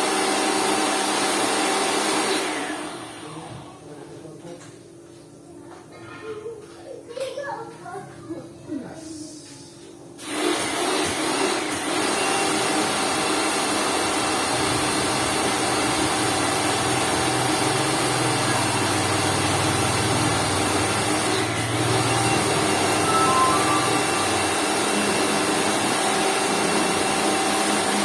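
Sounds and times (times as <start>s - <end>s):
electric pressure washer running: 0.0s - 3.5s, 10.2s - 28.0s.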